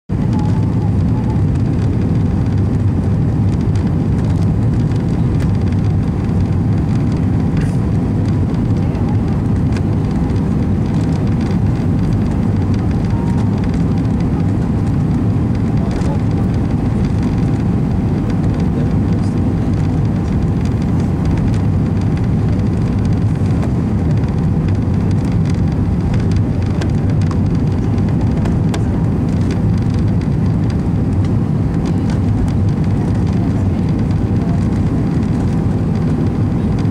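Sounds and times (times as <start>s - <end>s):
airliner engines rumbling: 0.1s - 36.9s.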